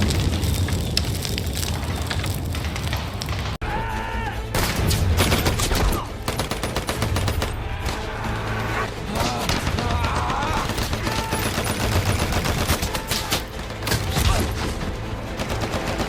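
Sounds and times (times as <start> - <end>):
rifle and machine-gun fire: 4.6 - 8.1, 9.1 - 14.2, 15.2 - 16.0.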